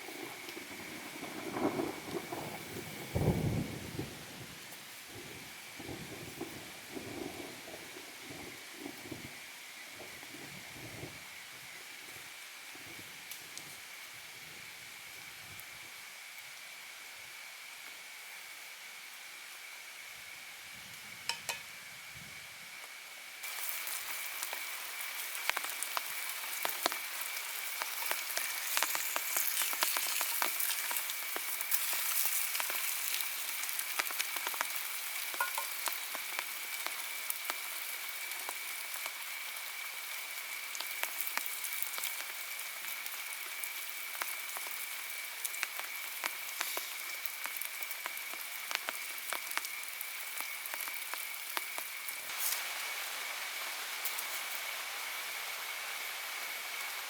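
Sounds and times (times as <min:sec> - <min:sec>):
rain pattering: 0:00.0 - 0:11.3, 0:23.4 - 0:57.0.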